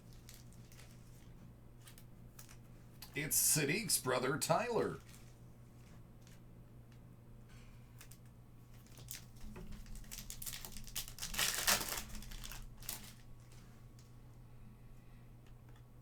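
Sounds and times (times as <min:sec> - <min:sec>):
plastic wrapper crinkling and tearing: 0:00.1 - 0:01.2, 0:08.8 - 0:13.3.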